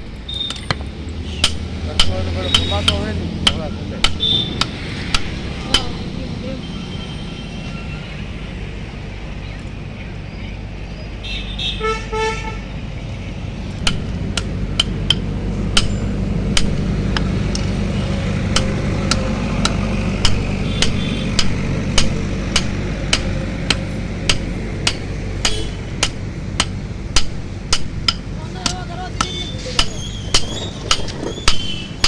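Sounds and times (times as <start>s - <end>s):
hammer striking metal: 0.0s - 6.2s, 13.8s - 32.0s
steady low hum: 12.6s - 32.0s.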